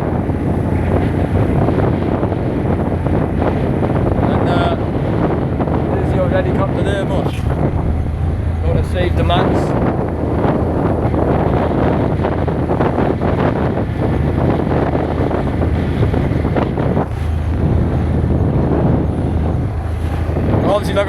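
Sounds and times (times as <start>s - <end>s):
wind buffeting microphone: 0.0s - 21.0s.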